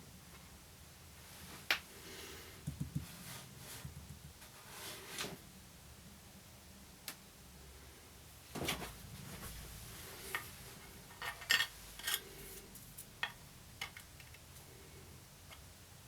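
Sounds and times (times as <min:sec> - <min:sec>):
small metal parts clinking: 0:11.1 - 0:12.3.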